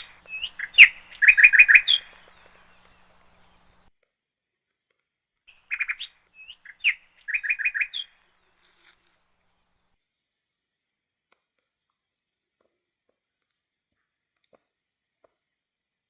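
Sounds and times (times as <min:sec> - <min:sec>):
songbird singing: 0:00.0 - 0:03.9, 0:05.5 - 0:12.0.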